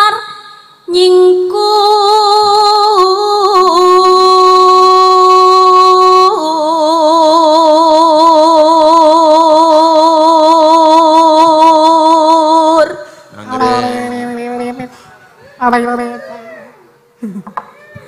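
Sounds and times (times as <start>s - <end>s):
solo voice singing long notes: 13.4s - 14.9s.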